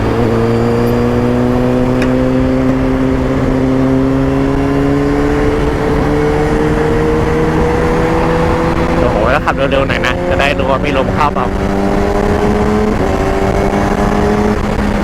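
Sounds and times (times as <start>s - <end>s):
motorcycle engine pulling under load: 0.0s - 9.2s
low wind rumble: 0.0s - 15.0s.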